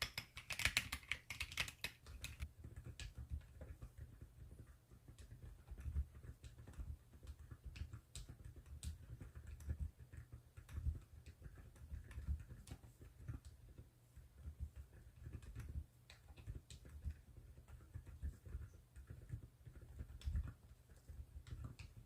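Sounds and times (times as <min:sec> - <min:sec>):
mechanical keyboard typing: 0:00.0 - 0:13.8.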